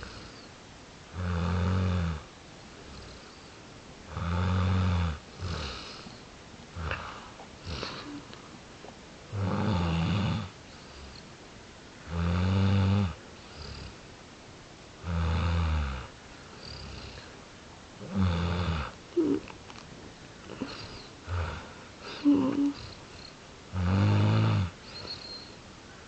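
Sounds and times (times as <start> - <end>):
loud snoring: 0.0 - 0.5, 1.1 - 3.4, 4.1 - 6.2, 6.8 - 8.2, 9.3 - 11.2, 12.1 - 14.0, 15.0 - 17.3, 18.0 - 19.4, 20.5 - 25.5.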